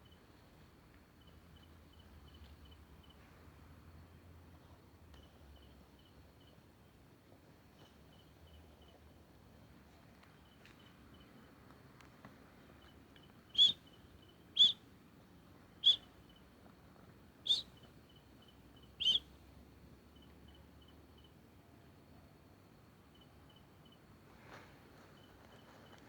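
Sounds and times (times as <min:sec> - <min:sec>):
insects chirping: 0:12.7 - 0:21.9
animal high-pitched calls: 0:13.6 - 0:13.8, 0:14.6 - 0:14.8, 0:19.0 - 0:19.2.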